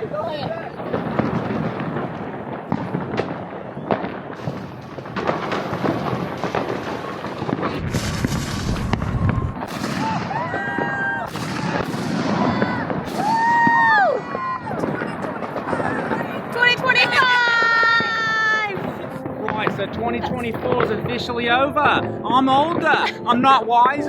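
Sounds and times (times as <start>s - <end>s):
fireworks popping and crackling: 0.0s - 24.0s
deep rumbling boom: 0.5s - 13.6s.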